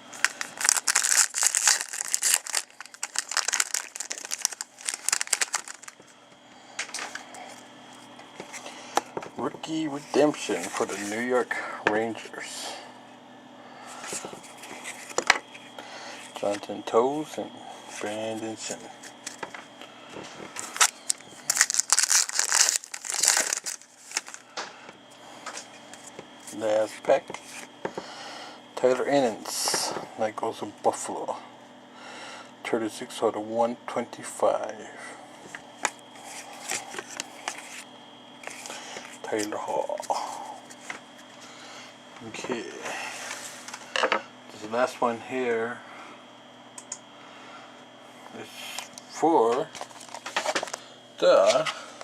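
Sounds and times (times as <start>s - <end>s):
plastic wrapper crinkling and tearing: 0.1s - 6.0s, 20.6s - 24.4s, 49.8s - 50.8s.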